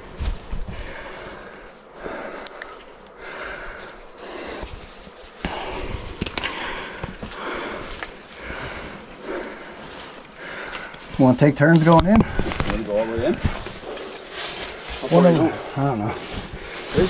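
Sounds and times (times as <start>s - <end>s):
person breathing hard: 0.5s - 11.2s, 12.0s - 12.7s, 13.3s - 17.0s.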